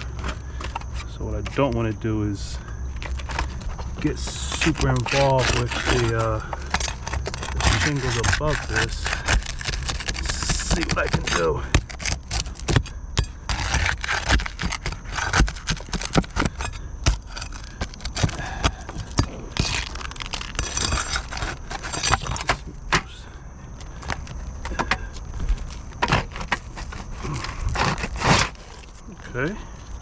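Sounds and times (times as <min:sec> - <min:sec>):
metal tool prying shingles: 0:03.0 - 0:23.1, 0:26.0 - 0:28.8.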